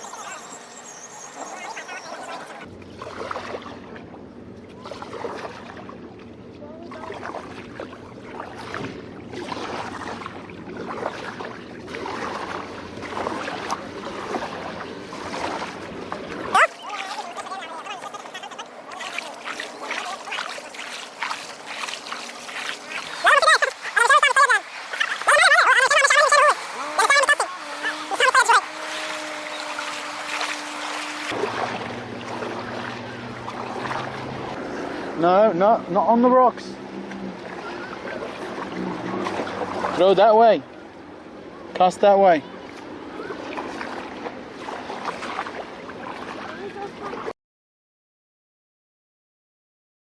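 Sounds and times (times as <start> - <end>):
steady hum: 0.0 - 39.9
water lapping around kayak: 0.0 - 47.4.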